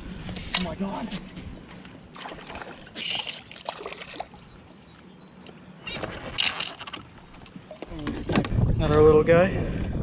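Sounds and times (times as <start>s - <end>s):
water splashing: 2.2s - 4.4s.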